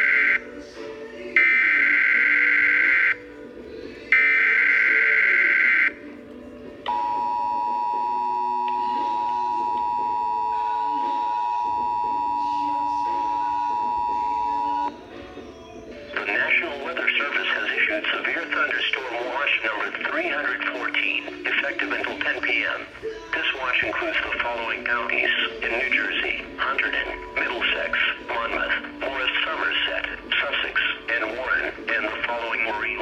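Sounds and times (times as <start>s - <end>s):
two-tone attention signal: 0.0s - 0.5s, 1.4s - 3.2s, 4.1s - 6.0s, 6.9s - 15.0s.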